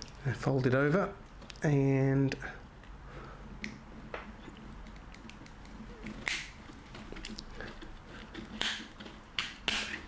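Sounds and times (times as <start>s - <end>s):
blade sawing plastic strapping: 4.8s - 10.0s.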